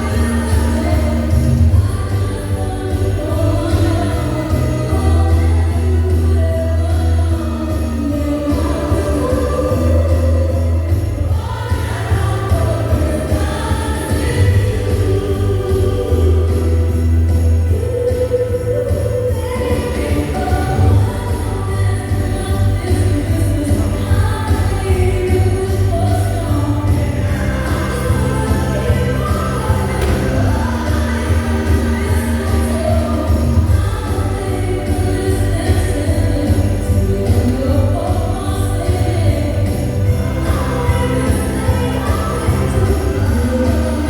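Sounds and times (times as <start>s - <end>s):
choir singing over heavy bass: 0.0s - 44.0s
choir singing: 18.0s - 22.8s, 24.4s - 44.0s
heavy bass line: 24.5s - 44.0s.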